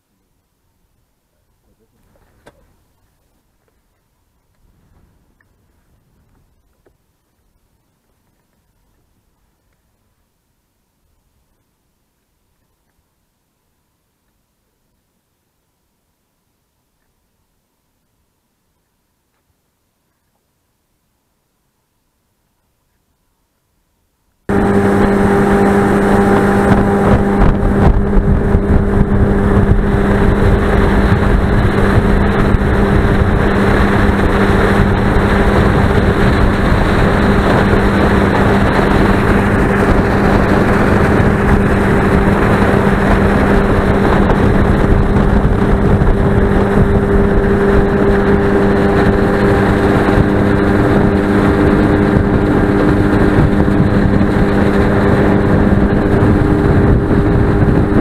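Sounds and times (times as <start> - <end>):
boat motor humming: 24.5 - 58.0
loud rushing noise: 24.5 - 58.0.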